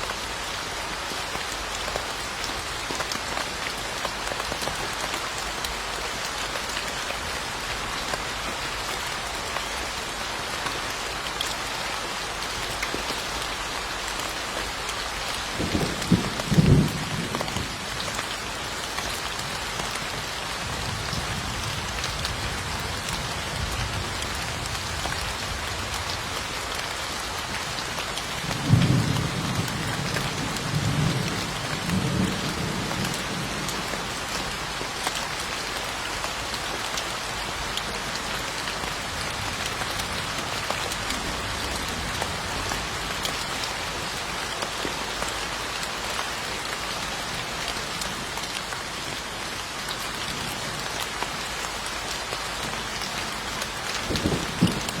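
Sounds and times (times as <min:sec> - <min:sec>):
steady rain hissing: 0:00.0 - 0:55.0
low thunder rumbling: 0:54.0 - 0:55.0.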